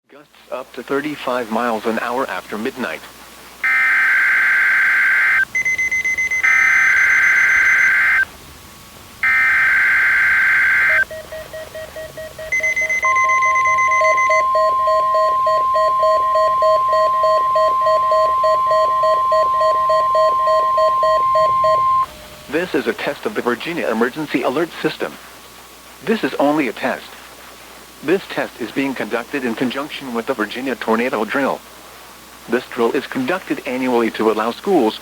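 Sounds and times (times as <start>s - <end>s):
harsh digital data bursts: 3.6s - 8.3s, 9.2s - 22.1s
steady alarm tone: 3.6s - 8.3s, 9.2s - 22.5s
short chirpy beeps: 5.6s - 8.2s, 9.2s - 22.1s
pulsing alert beeps: 9.2s - 22.1s.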